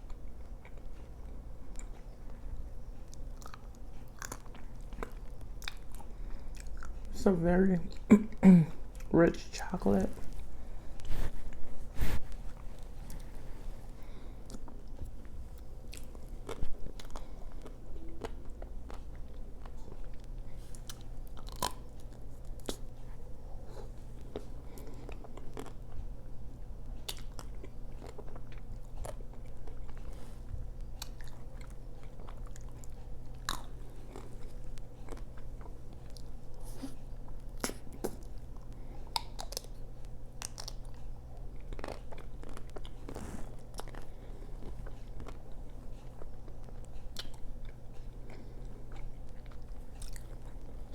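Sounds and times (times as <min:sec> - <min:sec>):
steady low hum: 0:00.0 - 0:50.9
wet mouth sounds: 0:37.6 - 0:38.2.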